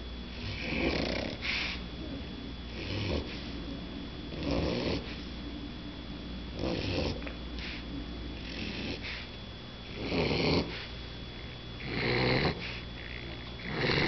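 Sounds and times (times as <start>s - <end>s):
puppy snoring: 0.3s - 3.6s, 4.3s - 5.3s, 6.5s - 7.8s, 8.4s - 10.9s, 11.8s - 14.0s.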